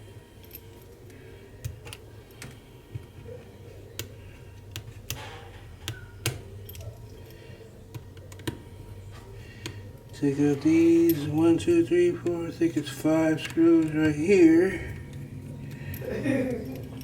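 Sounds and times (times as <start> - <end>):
faint low hum: 0.0 - 17.0
small repair tools clicking: 13.4 - 17.0.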